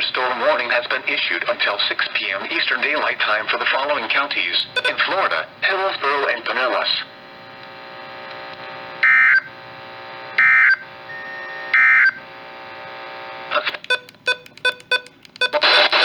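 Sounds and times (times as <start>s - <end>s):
steady electronic hum: 3.4s - 16.0s
rapid short beeps: 4.8s - 5.0s, 13.8s - 16.0s
digital screeching data bursts: 4.8s - 5.1s.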